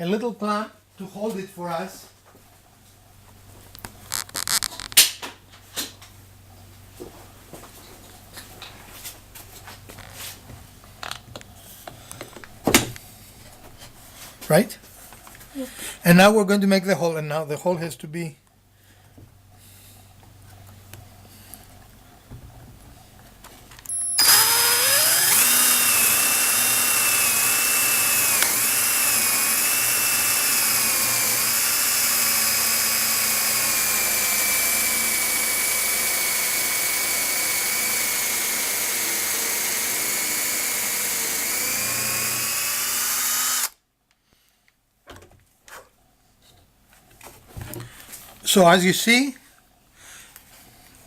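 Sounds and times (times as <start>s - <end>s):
electric drill boring into wood: 23.9s - 43.8s.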